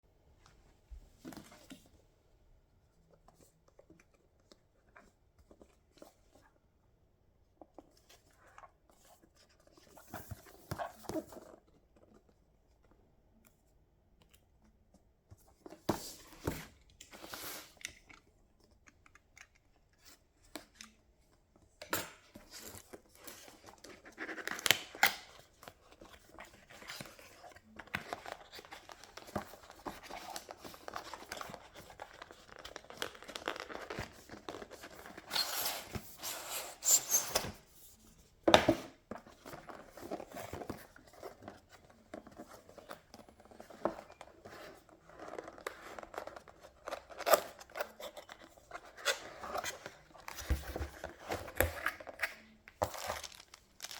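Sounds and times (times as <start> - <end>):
packaging rustling and tearing: 22.5 - 37.0, 39.3 - 53.9.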